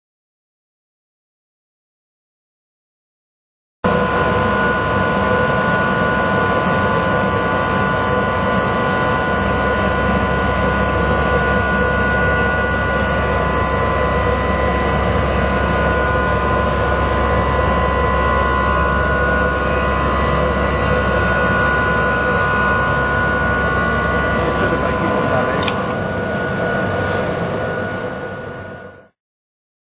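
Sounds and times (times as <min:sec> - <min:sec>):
cutting plotter mechanical whine: 0:03.9 - 0:29.2.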